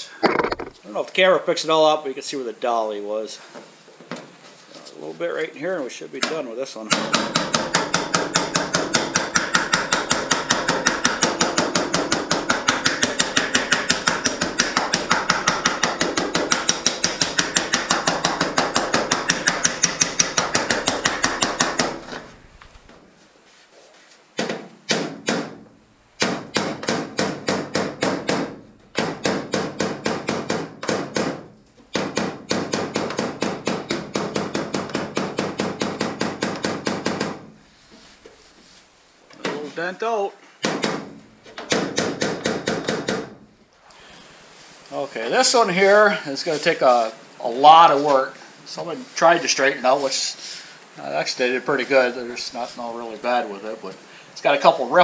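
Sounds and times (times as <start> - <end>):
hammer tapping metal hull: 6.9 - 22.1.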